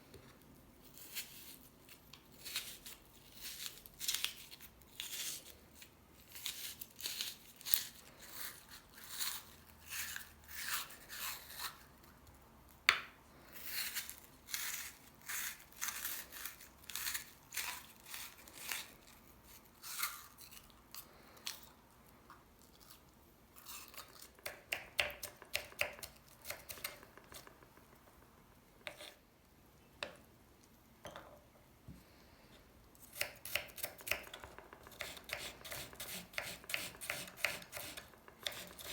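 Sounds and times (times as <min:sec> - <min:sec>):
crisp scraping or cutting strokes: 0:34.9 - 0:38.9.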